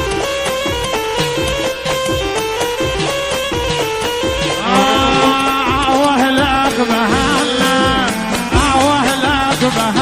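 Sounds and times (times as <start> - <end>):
sustained folk melody: 0.0 - 10.0
steady drum beat: 0.6 - 10.0
wavering held melodic line: 4.6 - 8.8.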